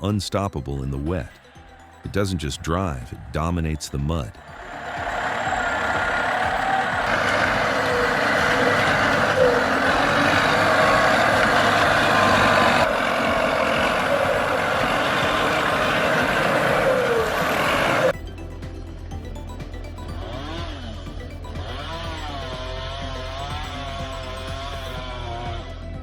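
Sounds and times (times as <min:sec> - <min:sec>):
heavy truck engine running hard: 0:04.4 - 0:18.1.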